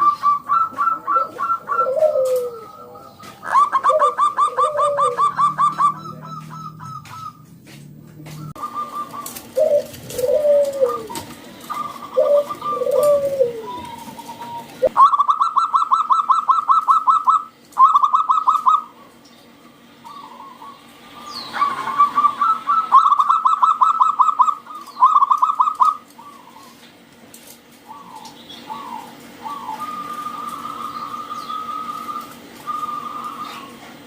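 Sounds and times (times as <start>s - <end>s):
drawn-out arching coos: 0.0s - 27.2s, 27.8s - 34.0s
doves cooing rapidly: 0.0s - 34.0s.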